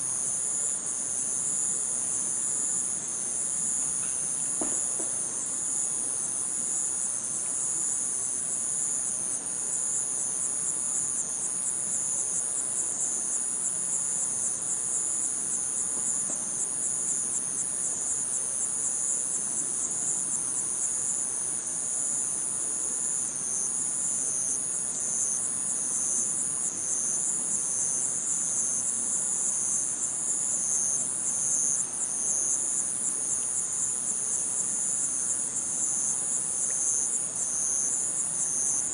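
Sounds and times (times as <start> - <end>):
insects trilling: 0.0 - 38.9.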